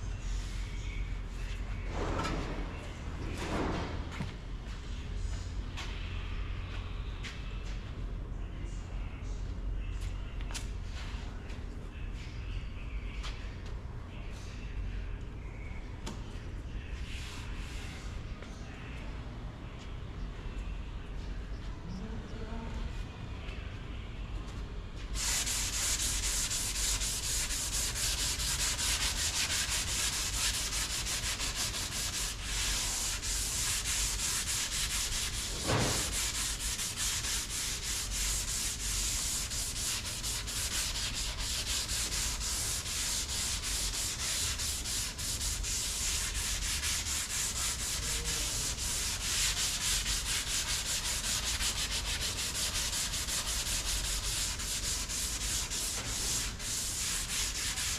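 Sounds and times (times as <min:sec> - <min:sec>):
sanding filler on car panel: 0:25.2 - 0:57.9
brief thump: 0:35.6 - 0:36.1.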